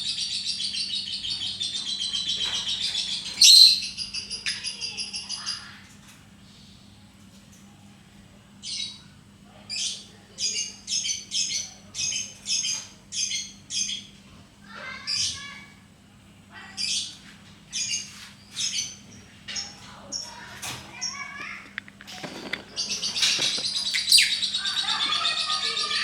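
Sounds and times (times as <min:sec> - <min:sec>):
bird squawking: 0:00.0 - 0:05.7, 0:22.7 - 0:26.0.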